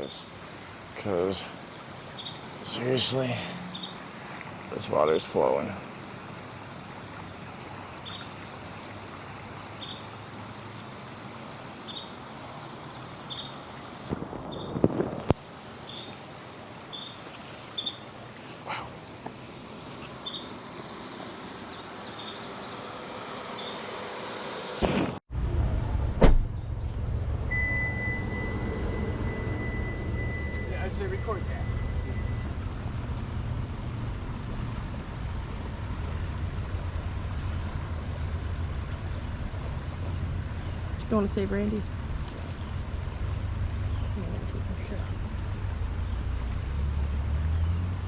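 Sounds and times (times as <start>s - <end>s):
even hiss: 0.0s - 25.2s
insects droning: 0.0s - 25.2s, 26.8s - 48.0s
loud low rumble: 25.3s - 47.4s.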